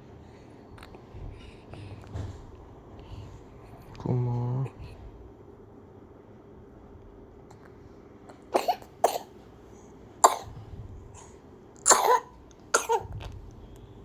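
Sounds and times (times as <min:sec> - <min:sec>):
baby coughing: 0:08.4 - 0:09.4, 0:10.2 - 0:10.6, 0:11.2 - 0:13.2.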